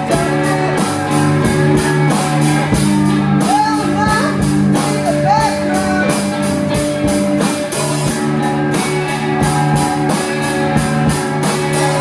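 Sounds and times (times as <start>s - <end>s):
drum kit beat with cymbals: 0.0s - 12.0s
held guitar notes: 0.0s - 12.0s.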